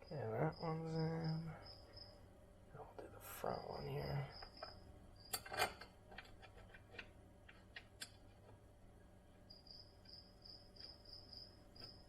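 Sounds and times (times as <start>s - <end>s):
crickets chirping: 0.0s - 5.7s, 9.3s - 12.0s.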